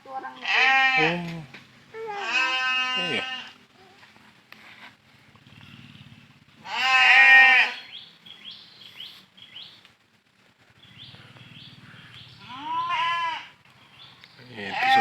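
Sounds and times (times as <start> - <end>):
goat bleating: 0.4 - 3.6, 6.6 - 7.8, 12.4 - 13.6, 14.6 - 15.0.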